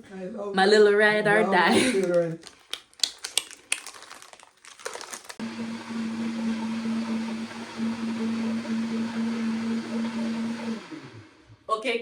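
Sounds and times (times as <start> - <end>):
blender motor humming: 5.3 - 11.7.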